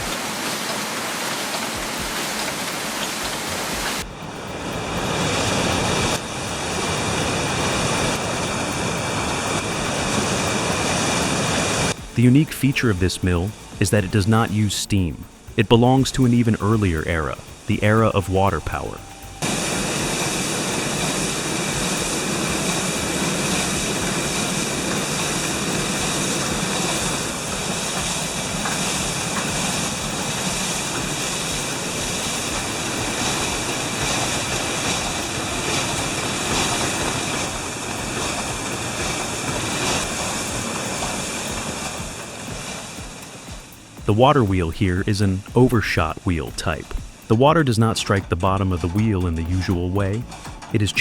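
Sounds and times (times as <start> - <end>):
fast-flowing water rushing: 0.0 - 51.0.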